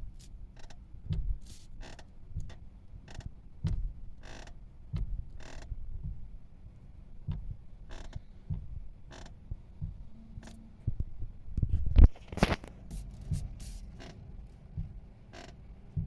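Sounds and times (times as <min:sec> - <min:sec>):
steering column creaking: 0:01.4 - 0:05.8, 0:07.3 - 0:11.2, 0:12.0 - 0:16.0
knocks: 0:03.6 - 0:04.0.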